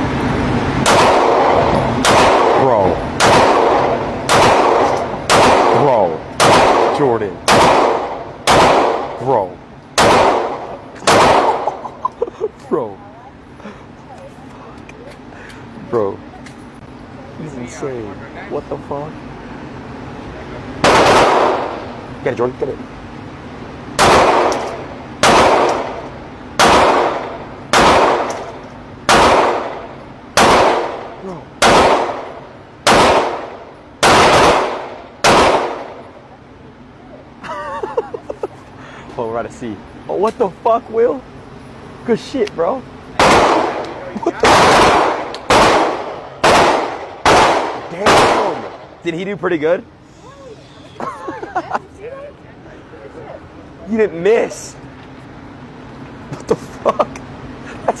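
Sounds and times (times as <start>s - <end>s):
gunshots with ringing echo: 0.8s - 9.3s, 10.0s - 11.8s, 20.8s - 21.9s, 24.0s - 36.1s, 43.2s - 49.0s.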